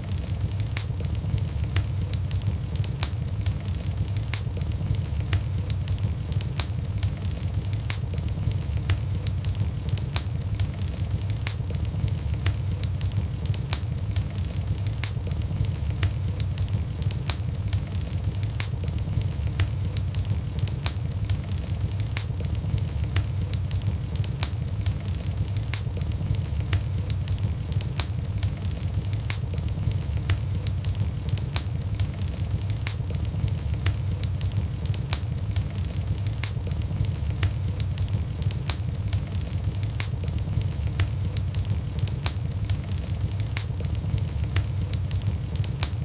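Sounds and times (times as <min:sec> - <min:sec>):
burning logs crackling and popping: 0:00.0 - 0:46.0
fire flames rumbling: 0:00.0 - 0:46.0.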